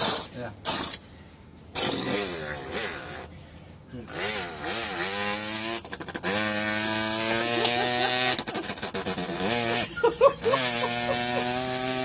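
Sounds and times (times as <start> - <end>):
person imitating moped engine: 6.2 - 12.0.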